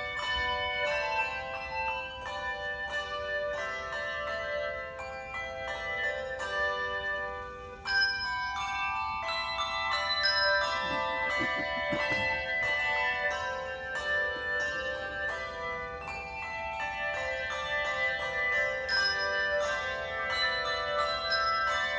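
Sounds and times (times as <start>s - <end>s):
handbell choir playing: 0.0s - 21.9s.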